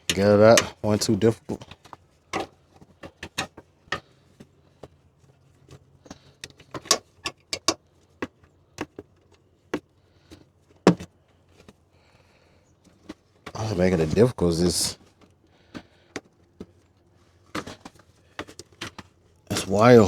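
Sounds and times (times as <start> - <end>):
plastic parts clicking and tapping: 6.0 - 11.8.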